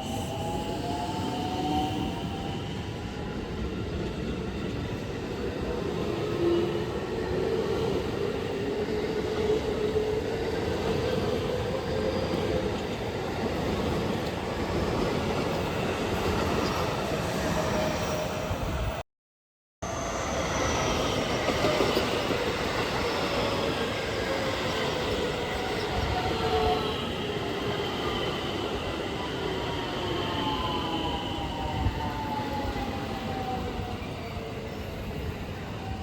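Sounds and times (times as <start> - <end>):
train wheels rumbling on rail: 20.6 - 34.2.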